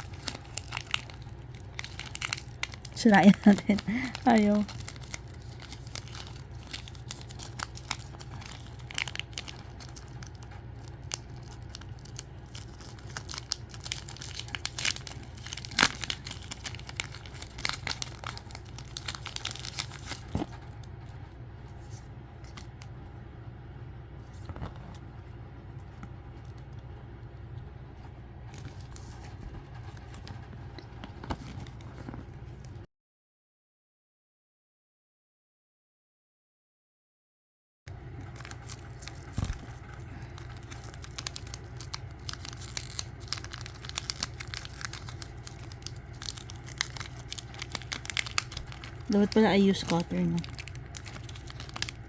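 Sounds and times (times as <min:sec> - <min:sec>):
packaging tearing and crinkling: 0:00.0 - 0:20.8, 0:38.1 - 0:52.0
steady low hum: 0:00.0 - 0:32.9, 0:37.9 - 0:52.0.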